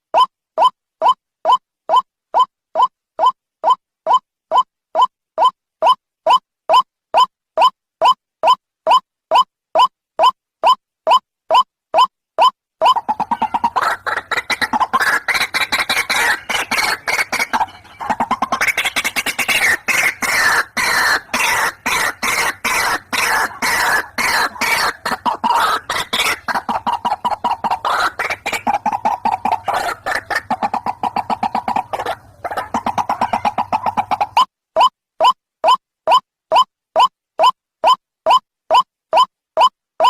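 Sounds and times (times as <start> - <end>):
waterhen harsh croaking call: 12.8 - 38.8.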